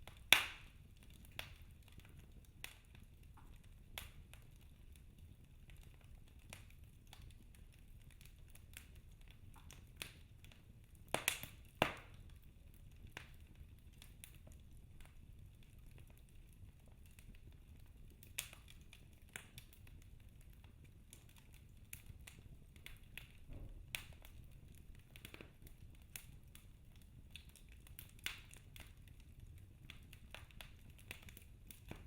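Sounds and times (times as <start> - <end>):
wood fire crackling and popping: 0.0 - 32.0
faint low rumble: 19.8 - 27.4.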